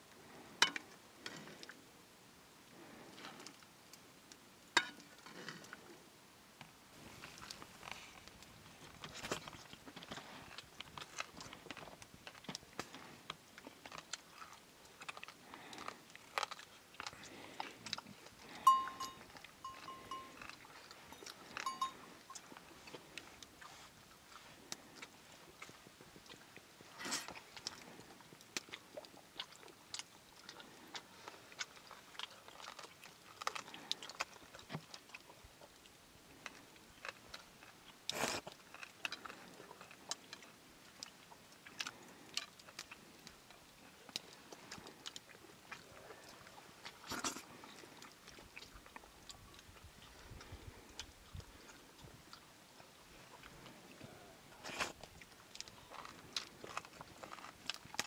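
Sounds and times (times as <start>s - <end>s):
chewing and crunching food: 0.0s - 2.0s, 2.6s - 58.0s
pitched ringing tone: 18.6s - 20.4s, 21.6s - 22.0s.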